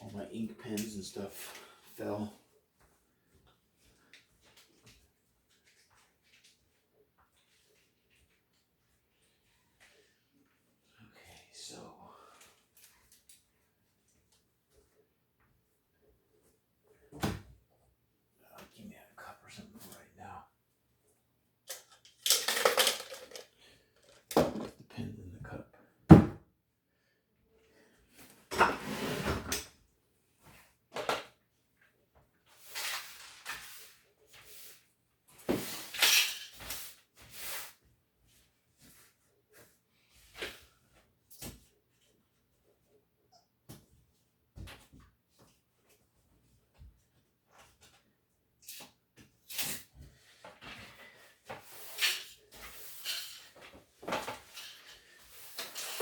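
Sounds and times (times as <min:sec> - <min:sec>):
objects clunking and scraping: 0:21.7 - 0:24.8
household objects knocking and scraping: 0:24.3 - 0:24.8.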